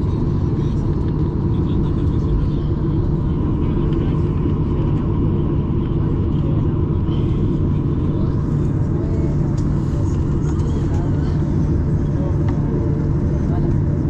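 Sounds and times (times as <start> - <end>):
airliner cabin rumble: 0.0 - 14.0
faint steady whine: 0.0 - 14.0.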